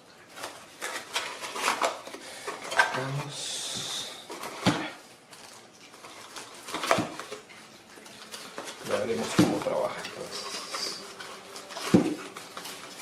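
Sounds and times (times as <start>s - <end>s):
hard objects clicking and knocking: 8.2s - 13.0s.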